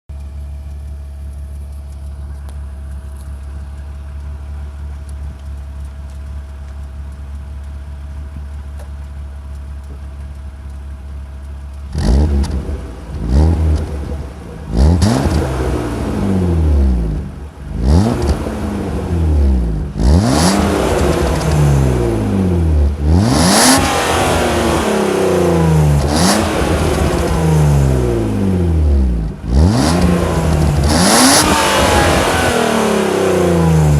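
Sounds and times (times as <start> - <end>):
car engine idling: 0.1 - 33.9
car engine revving: 11.8 - 33.9.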